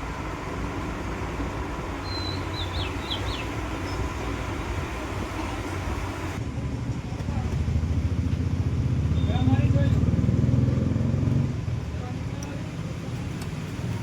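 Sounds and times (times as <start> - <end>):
engine running: 0.0 - 14.0
bird chirping: 2.0 - 4.3.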